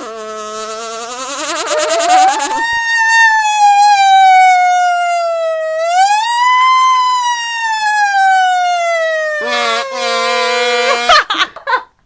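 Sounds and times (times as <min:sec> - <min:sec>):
buzzing wail through candy box: 0:00.0 - 0:11.5.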